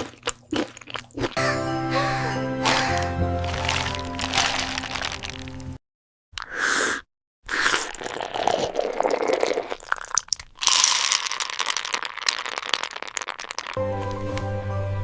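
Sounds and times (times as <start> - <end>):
crunching and chewing food: 0.0 - 1.4, 2.6 - 5.8, 7.6 - 13.8.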